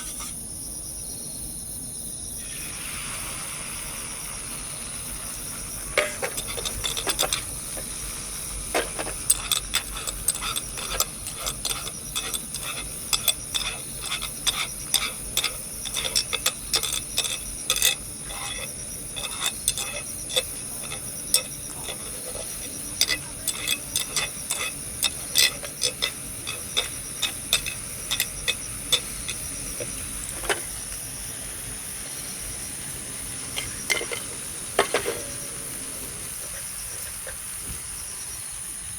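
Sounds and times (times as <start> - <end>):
insect chirring: 3.7 - 38.7
metal utensil scraping cookware: 5.5 - 30.9, 33.5 - 35.6.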